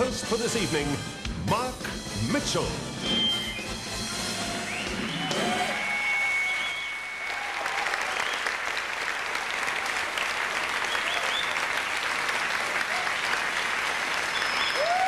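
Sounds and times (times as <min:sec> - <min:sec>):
band music: 0:00.0 - 0:07.2
large audience applauding: 0:04.4 - 0:15.0.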